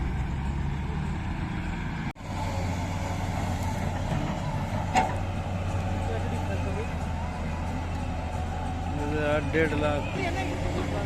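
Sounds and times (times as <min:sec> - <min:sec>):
heavy diesel engine running: 0:00.0 - 0:11.0.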